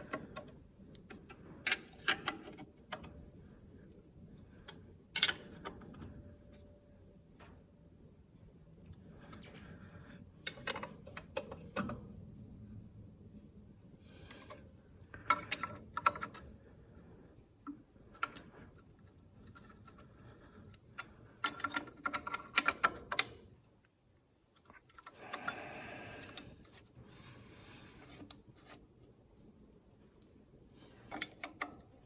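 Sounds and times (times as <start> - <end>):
wrench clicking on metal nuts: 21.0 - 23.4, 31.1 - 31.9.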